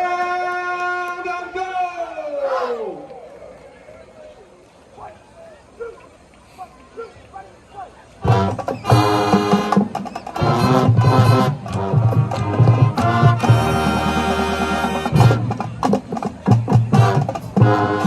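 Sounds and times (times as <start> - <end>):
brass chords: 8.2 - 18.0.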